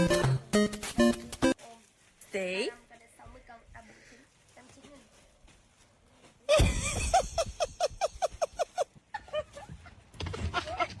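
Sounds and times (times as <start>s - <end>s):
person laughing: 6.5s - 11.0s.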